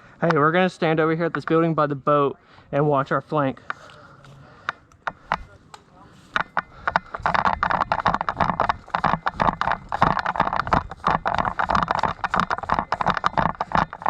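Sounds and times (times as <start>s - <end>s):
hurried footsteps: 3.0s - 14.0s
gear rattling and knocking: 6.4s - 14.0s.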